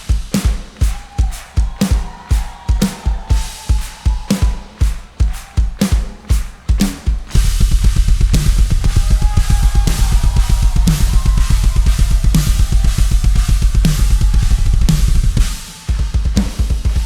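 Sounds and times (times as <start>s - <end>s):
drum kit beat: 0.0s - 17.0s
band playing: 7.4s - 17.0s.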